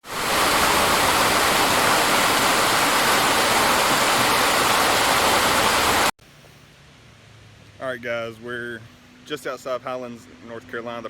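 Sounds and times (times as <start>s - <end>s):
waterfall roaring: 0.0s - 6.1s.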